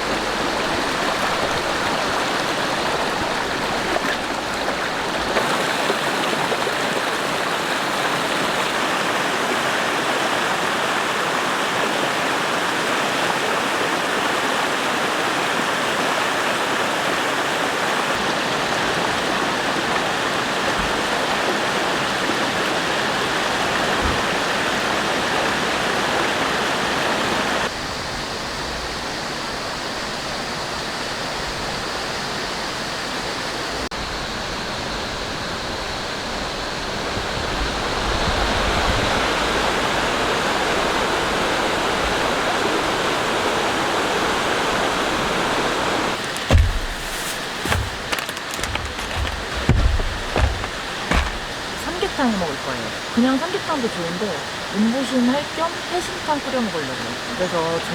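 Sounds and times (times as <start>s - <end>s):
stream rushing: 0.0s - 27.6s, 45.2s - 54.7s.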